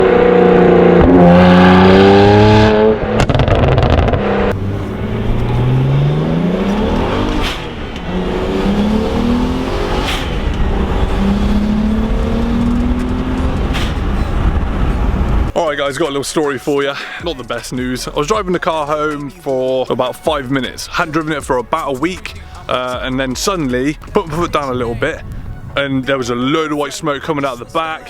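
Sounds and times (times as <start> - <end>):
car engine revving: 0.0 - 15.6.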